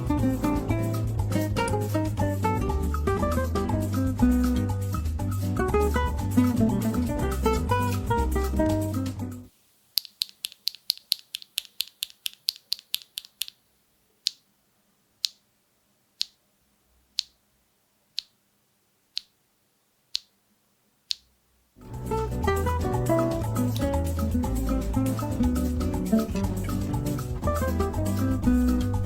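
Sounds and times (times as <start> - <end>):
keyboard switches clacking: 10.0 - 13.6.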